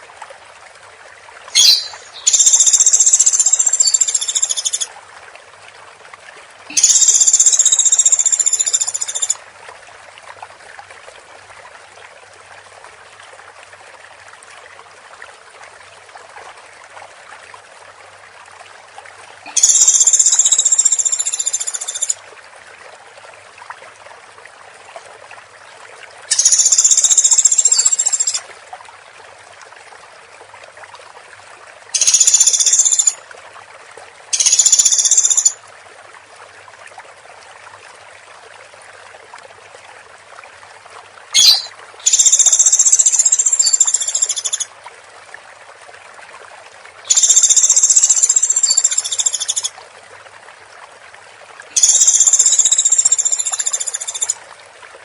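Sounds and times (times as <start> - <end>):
woodpecker rattling calls: 1.6 - 4.8, 41.4 - 44.6.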